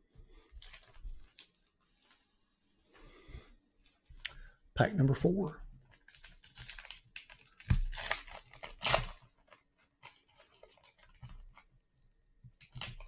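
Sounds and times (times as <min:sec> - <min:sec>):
wrapper crinkling: 0:00.5 - 0:02.3, 0:05.8 - 0:11.7
wrapper ripping: 0:05.8 - 0:11.6, 0:12.6 - 0:13.0.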